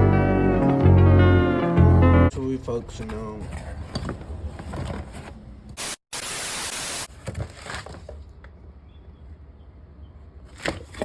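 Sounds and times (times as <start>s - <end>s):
static hiss burst: 5.8s - 7.1s.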